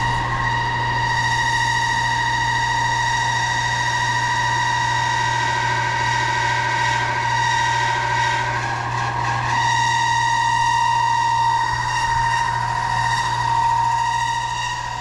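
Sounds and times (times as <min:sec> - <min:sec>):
air conditioner low hum: 0:00.0 - 0:07.8
fan motor high-pitched squeal: 0:00.0 - 0:15.0.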